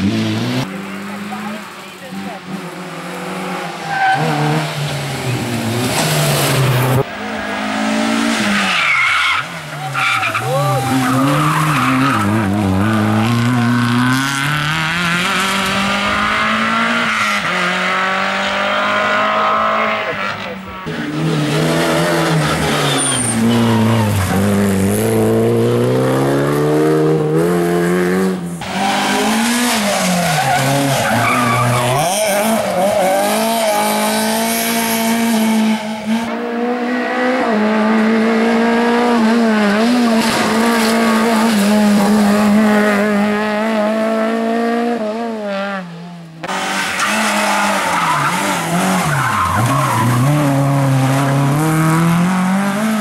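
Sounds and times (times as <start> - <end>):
tyres skidding: 0.0 - 44.9, 46.2 - 53.0
rally car engines revving: 0.0 - 53.0.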